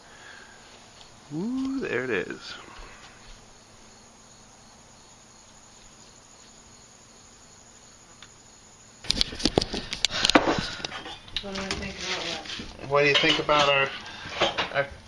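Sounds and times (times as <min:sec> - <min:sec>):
crickets chirping: 0:00.0 - 0:15.0
dishes and utensils clattering: 0:12.9 - 0:14.8.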